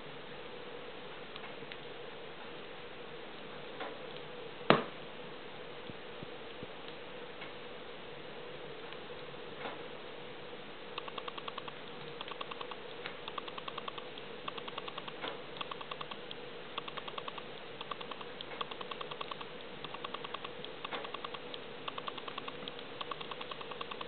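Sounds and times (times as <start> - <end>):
wood fire crackling and popping: 10.9 - 24.0
rapid ticking bursts: 11.0 - 24.0.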